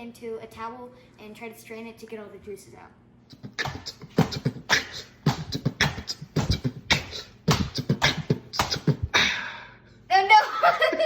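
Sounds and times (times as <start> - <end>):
rhythmic percussive beat: 3.3 - 9.3.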